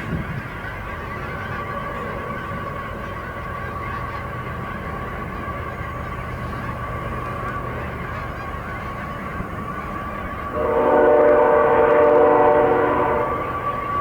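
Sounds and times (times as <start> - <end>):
geese honking: 0.2 - 14.0
train horn blast: 10.3 - 14.0.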